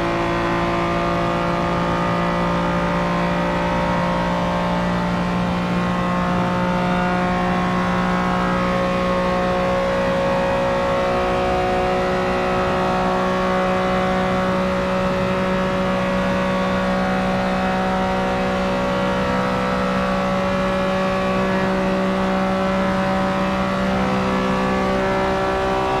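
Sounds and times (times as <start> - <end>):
sports car engine running: 0.0 - 26.0.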